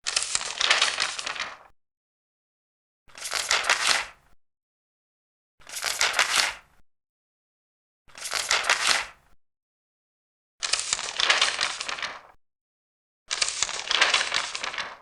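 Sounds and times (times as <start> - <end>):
paper pages rustling: 0.1 - 1.7, 3.1 - 4.1, 5.7 - 6.6, 8.2 - 9.2, 10.6 - 12.4, 13.3 - 15.0.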